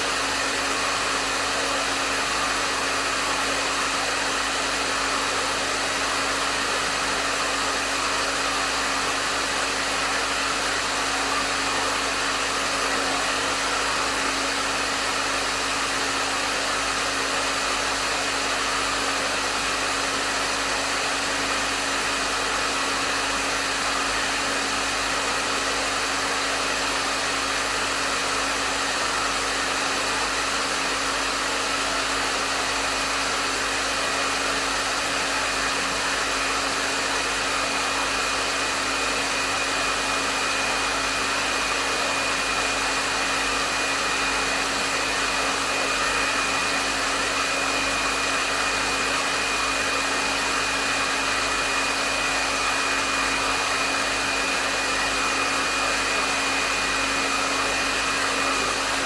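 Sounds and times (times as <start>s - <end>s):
hair dryer running: 0.0s - 59.0s.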